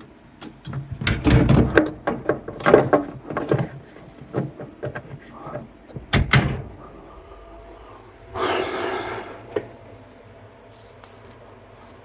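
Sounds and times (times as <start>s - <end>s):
person breathing out heavily: 6.8s - 9.6s.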